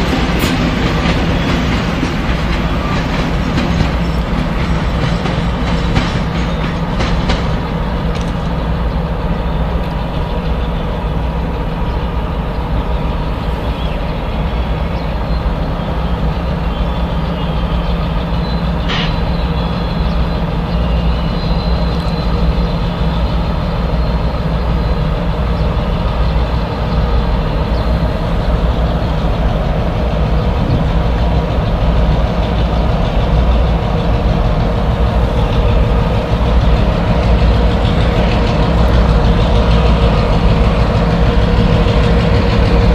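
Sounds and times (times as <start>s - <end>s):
diesel locomotive engine rumble: 0.0s - 42.9s.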